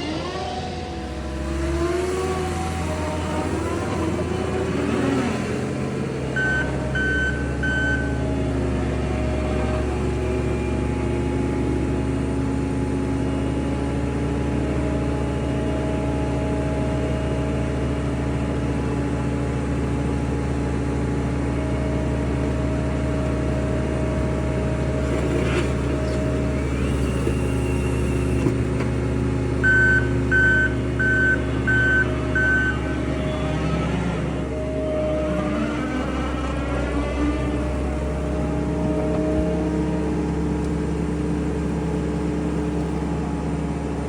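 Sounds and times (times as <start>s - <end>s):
skid steer engine running: 0.0s - 44.0s
back-up alarm beeping: 6.3s - 8.3s, 29.6s - 33.2s.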